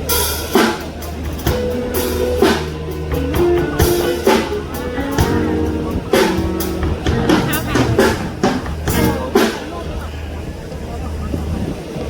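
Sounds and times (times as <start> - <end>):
drum kit hits: 0.0 - 10.0
bass line: 0.0 - 10.1
held guitar notes: 0.9 - 10.1.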